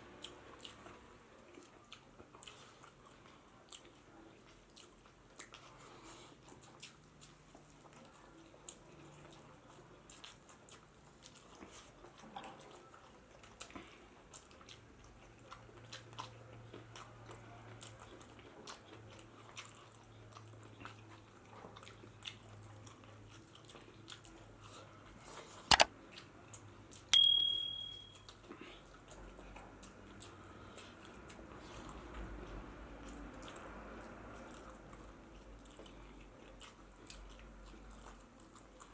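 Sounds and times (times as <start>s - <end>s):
person chewing: 0.2s - 27.1s, 28.1s - 38.9s
sharp ringing knocks: 27.2s - 28.2s.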